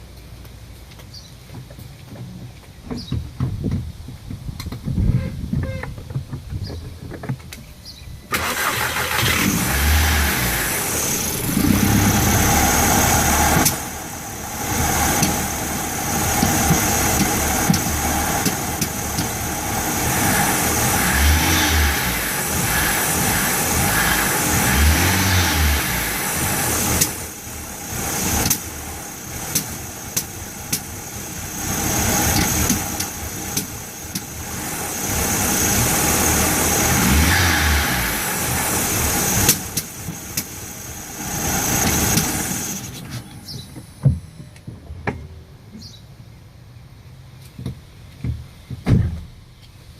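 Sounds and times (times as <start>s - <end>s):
engine popping: 8.3s - 44.2s
car engine starting: 8.3s - 44.3s
engine idling roughly: 8.4s - 37.1s.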